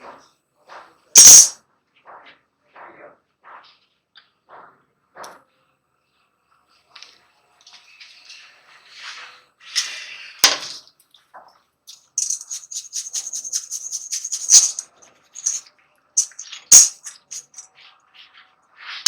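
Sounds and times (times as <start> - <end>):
rhythmic scrubbing of saw blade: 12.2 - 14.8.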